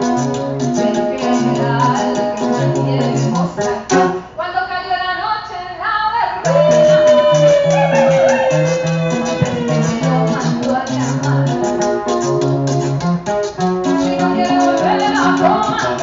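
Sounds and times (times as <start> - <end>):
person singing: 0.0 - 4.2, 6.4 - 12.3, 13.8 - 16.0
acoustic guitar strumming: 0.0 - 4.3, 6.5 - 16.0.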